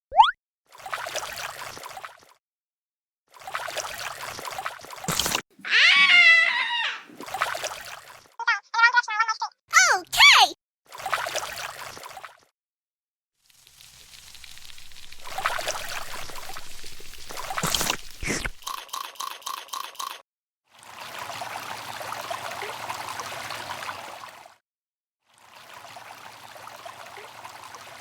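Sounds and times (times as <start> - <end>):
water pouring and running: 0.8 - 2.3, 3.4 - 8.4, 10.9 - 12.4, 13.4 - 19.6, 20.7 - 24.6, 25.3 - 28.0.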